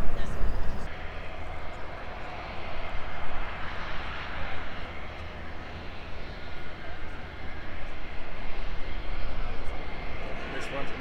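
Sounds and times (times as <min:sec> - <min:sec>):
jet engine rushing: 0:00.0 - 0:00.9.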